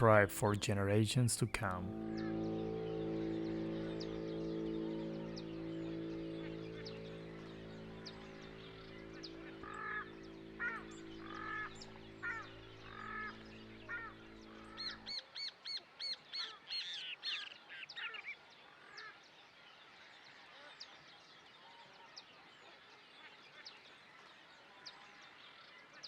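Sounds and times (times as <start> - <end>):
two-note bird call: 0.0 - 15.2
low sustained music chord: 0.0 - 15.3
high arched bird calls: 0.0 - 15.6.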